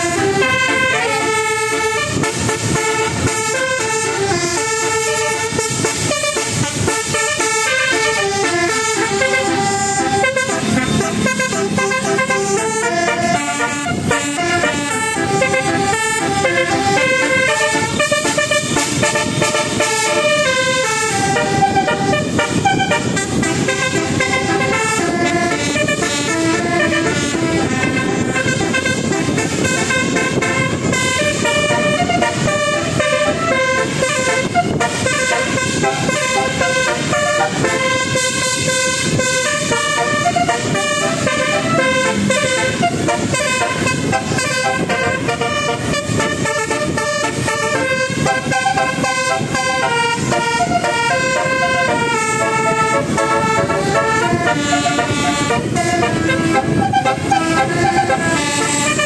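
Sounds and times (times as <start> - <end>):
multi-tone musical bus horn: 0.0 - 59.0.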